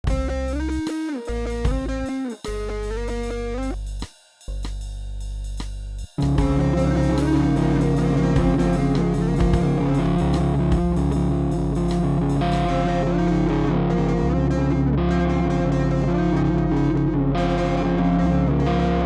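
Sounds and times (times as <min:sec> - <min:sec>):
rock band playing: 0:06.2 - 0:14.5.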